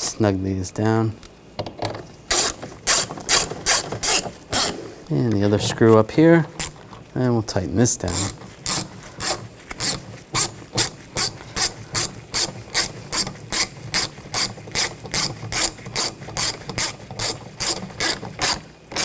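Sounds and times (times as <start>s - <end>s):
hand ratchet clicking: 2.3s - 4.8s, 8.0s - 19.0s.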